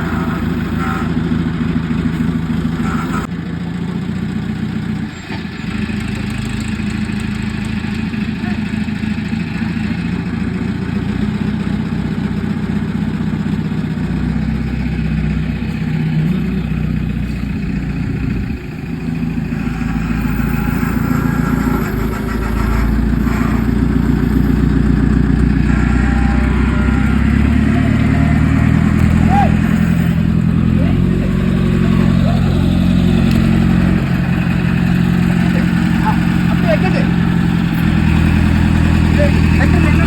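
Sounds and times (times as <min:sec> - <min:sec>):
chainsaw engine running: 0:14.3 - 0:40.0.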